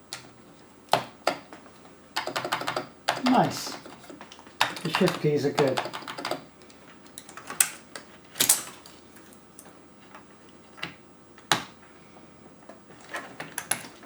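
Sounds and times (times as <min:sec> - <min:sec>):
keyboard keycaps clicking: 0:02.2 - 0:08.6.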